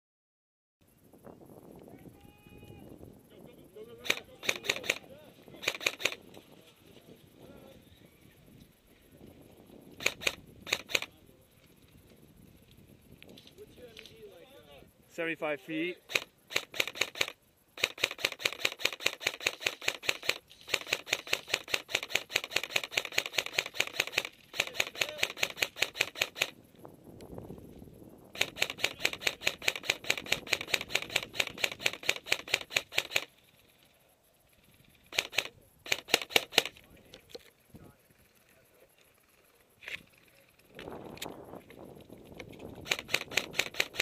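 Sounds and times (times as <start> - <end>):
rapid mechanical clicking: 4.0 - 6.4, 9.9 - 11.2, 16.0 - 26.6, 28.3 - 44.0.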